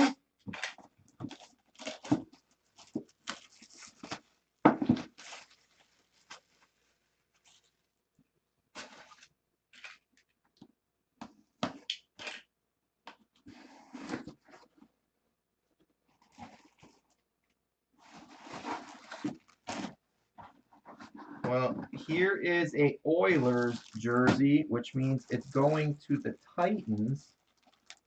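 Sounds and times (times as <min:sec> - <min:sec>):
packaging tearing and crinkling: 0:00.5 - 0:07.9, 0:23.3 - 0:24.5, 0:25.1 - 0:28.0.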